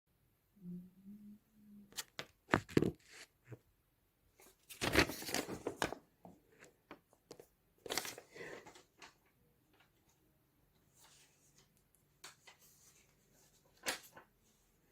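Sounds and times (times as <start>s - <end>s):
paper crackling and rustling: 4.5s - 6.0s, 7.3s - 10.0s.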